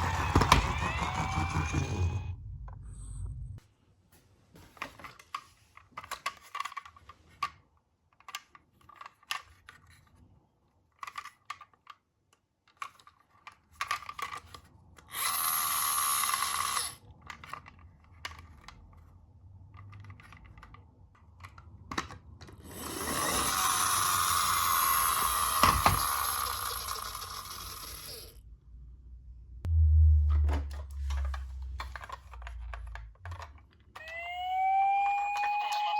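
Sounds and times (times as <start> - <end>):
toy car wheels whirring: 0.0 - 2.3, 13.8 - 18.6, 22.5 - 28.4, 31.0 - 35.9
toys clicking and knocking: 0.0 - 2.8, 4.8 - 10.2, 10.9 - 28.4, 30.4 - 35.9.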